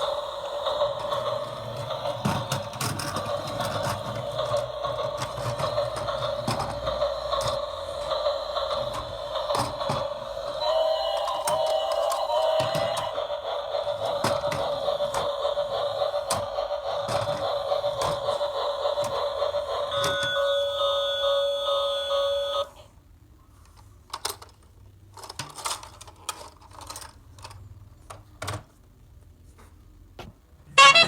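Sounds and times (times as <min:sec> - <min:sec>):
toy train motor whine: 0:00.0 - 0:22.9, 0:30.7 - 0:31.0.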